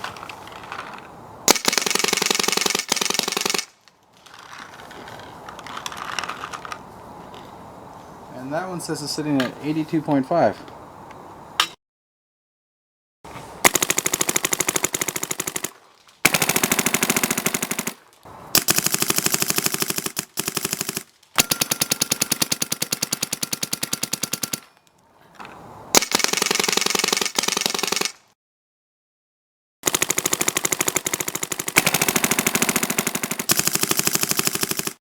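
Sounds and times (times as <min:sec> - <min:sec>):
paintball marker rapid fire: 0:01.5 - 0:03.7, 0:13.6 - 0:18.0, 0:18.6 - 0:24.7, 0:26.0 - 0:28.3, 0:29.8 - 0:35.0.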